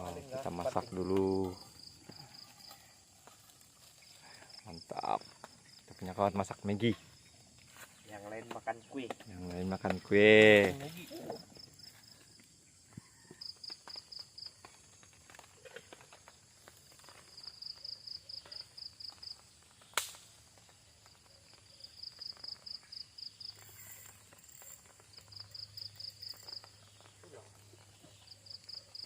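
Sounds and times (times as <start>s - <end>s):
high-pitched insect chirping: 20.6s - 29.0s.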